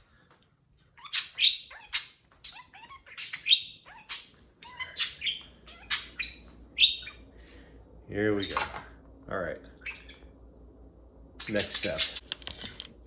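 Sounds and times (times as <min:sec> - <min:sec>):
budgerigars chirping: 0:01.0 - 0:07.3, 0:09.8 - 0:10.3.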